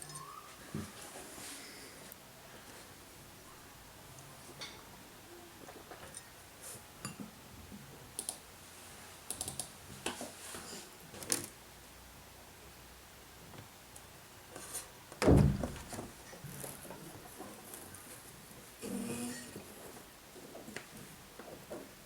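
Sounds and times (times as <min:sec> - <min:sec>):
louder thump: 0:15.2 - 0:16.1.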